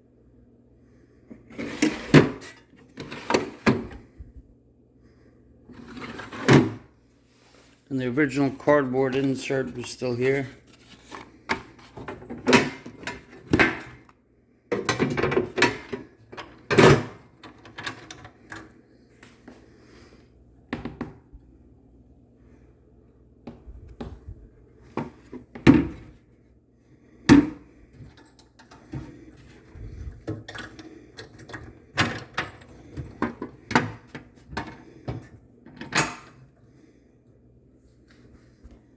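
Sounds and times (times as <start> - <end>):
tool chest drawers clunking: 14.7 - 18.3.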